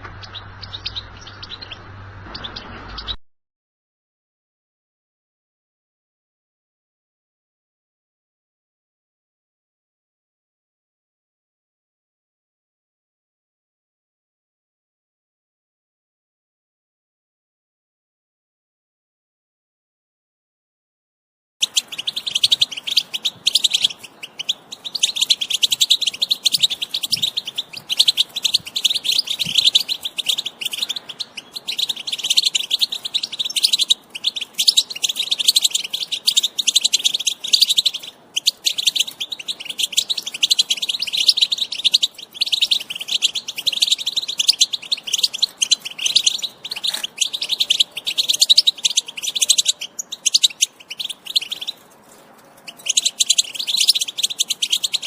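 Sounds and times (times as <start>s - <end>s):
finch twittering song: 0.0s - 3.2s, 21.6s - 55.0s.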